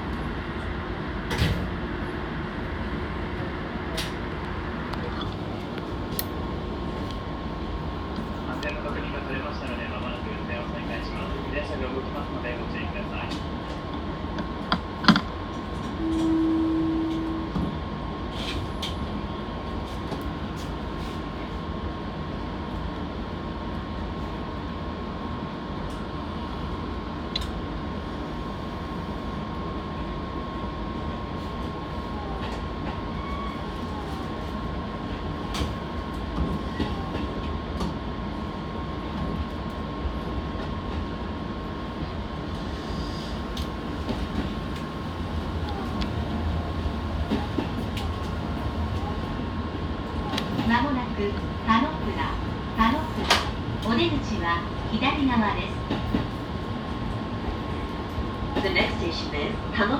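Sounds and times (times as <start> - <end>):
short loud steady tone: 16.0 - 17.6.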